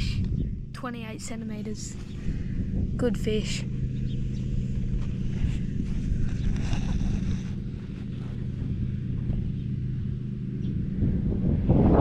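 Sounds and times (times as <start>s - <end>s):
low engine hum: 0.0s - 12.0s
faint clicks and rustles: 4.8s - 9.7s.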